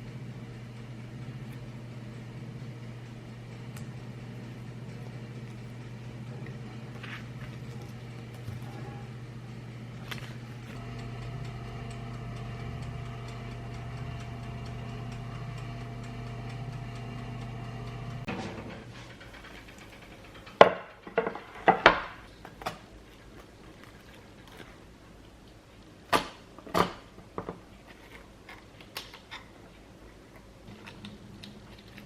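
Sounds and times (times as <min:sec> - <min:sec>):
appliance motor hum: 0:00.0 - 0:25.4
sharp clacks and knocks: 0:18.2 - 0:22.3.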